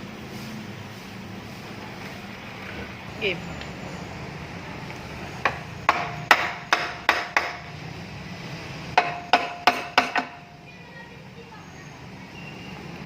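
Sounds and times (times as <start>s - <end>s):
hammer striking metal: 5.4s - 7.7s, 8.9s - 10.5s.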